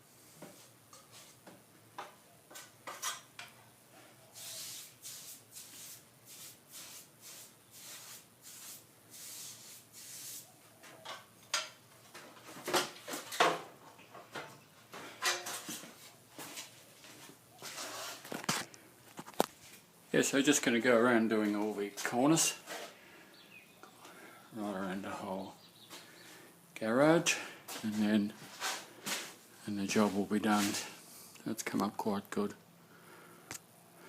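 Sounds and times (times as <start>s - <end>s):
metal plastering tools scraping: 15.1s - 16.0s, 17.6s - 18.6s.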